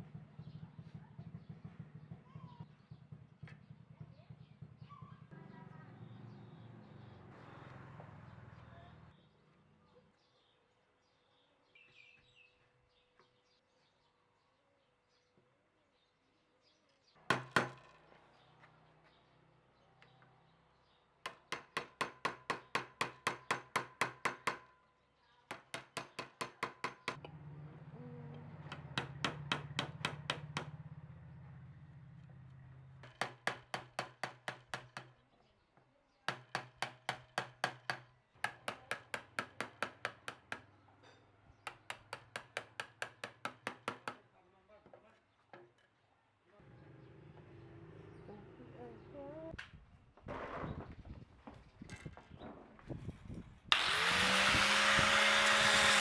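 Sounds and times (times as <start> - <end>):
hammer striking rapidly: 28.7 - 30.8.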